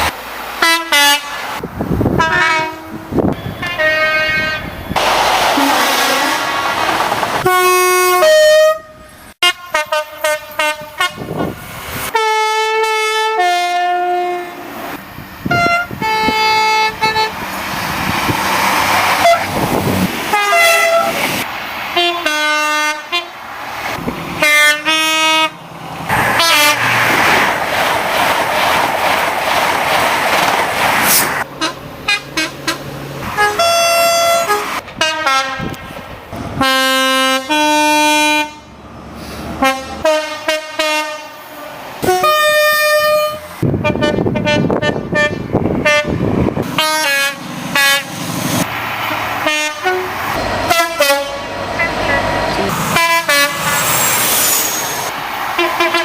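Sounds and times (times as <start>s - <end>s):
passing train rush: 0.0s - 56.0s
two-tone train air horns: 0.6s - 1.6s, 2.2s - 6.6s, 7.4s - 11.4s, 12.1s - 14.8s, 15.4s - 17.4s, 19.2s - 19.6s, 20.3s - 21.3s, 22.0s - 23.4s, 24.4s - 25.6s, 26.3s - 27.0s, 31.1s - 35.9s, 36.6s - 48.2s, 49.4s - 56.0s.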